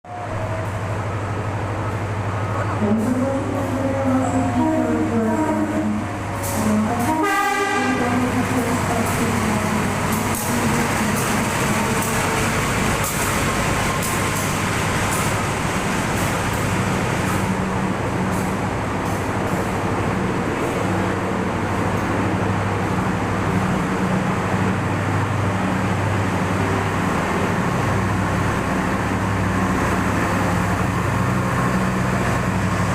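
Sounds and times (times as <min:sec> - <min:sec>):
diesel locomotive engine hum: 0:00.1 - 0:32.9.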